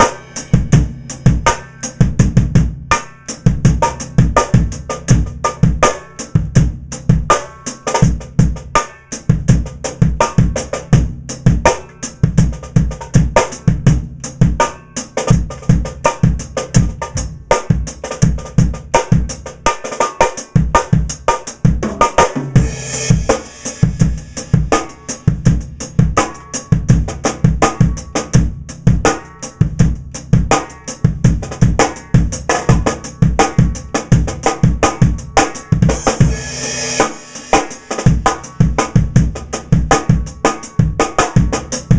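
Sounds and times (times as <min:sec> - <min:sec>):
cymbals: 0:00.0 - 0:02.2, 0:22.2 - 0:26.8, 0:34.8 - 0:39.6
bass drum: 0:00.0 - 0:41.9
high-tuned snare drum: 0:00.0 - 0:41.9.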